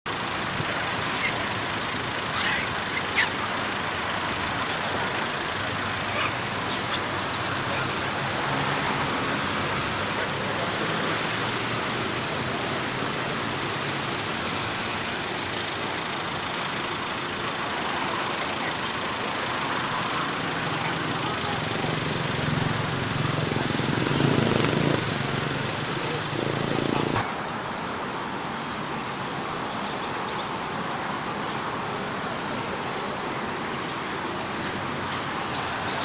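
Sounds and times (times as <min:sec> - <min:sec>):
outdoor background noise: 0:00.1 - 0:36.0
high-pitched animal calls: 0:01.0 - 0:03.4, 0:06.0 - 0:08.0.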